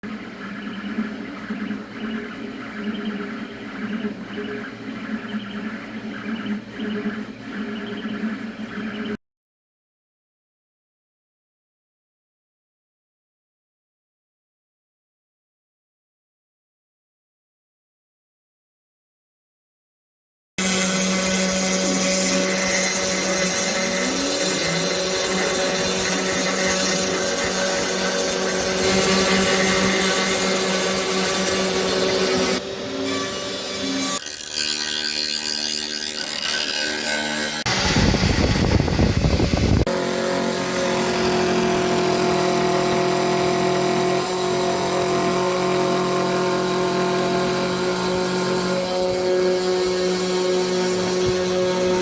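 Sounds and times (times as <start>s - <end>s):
machine motor hum: 20.6s - 52.0s
short rising whine: 37.7s - 48.0s.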